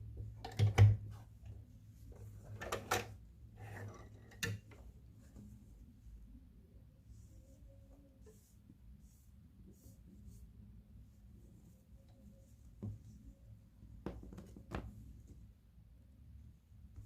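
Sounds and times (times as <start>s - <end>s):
soft rustling: 4.7s - 6.4s, 7.0s - 15.6s.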